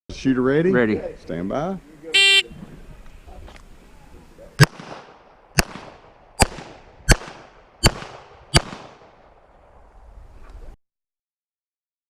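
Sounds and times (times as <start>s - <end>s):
handgun shots with echo: 4.6s - 9.2s.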